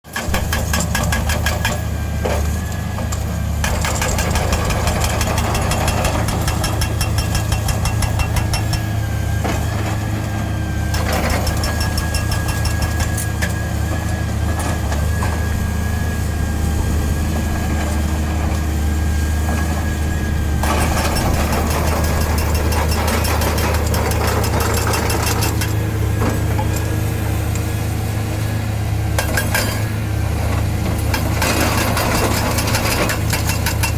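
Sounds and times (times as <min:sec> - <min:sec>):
diesel engine drone: 0:00.0 - 0:33.9
hydraulic breaker hammering: 0:00.2 - 0:01.8, 0:03.6 - 0:09.0.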